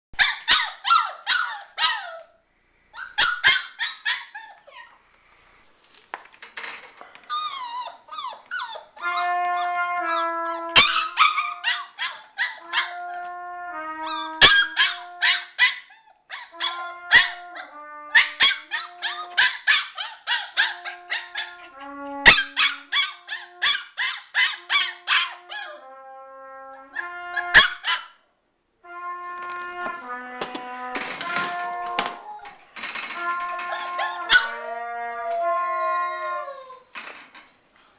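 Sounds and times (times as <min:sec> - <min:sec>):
dog yipping: 0:00.2 - 0:02.3, 0:03.0 - 0:05.0, 0:07.3 - 0:13.0, 0:14.0 - 0:25.8, 0:27.0 - 0:28.2, 0:33.6 - 0:34.6
trumpet held notes: 0:09.0 - 0:11.8, 0:12.6 - 0:15.6, 0:16.5 - 0:19.8, 0:20.5 - 0:23.8, 0:24.6 - 0:28.0, 0:28.8 - 0:36.8.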